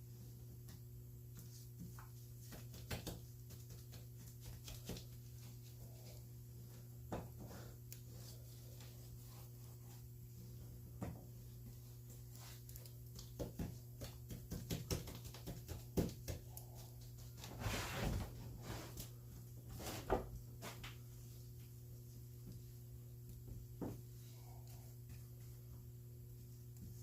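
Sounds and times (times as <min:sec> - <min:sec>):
brush scrubbing: 0:07.6 - 0:10.6.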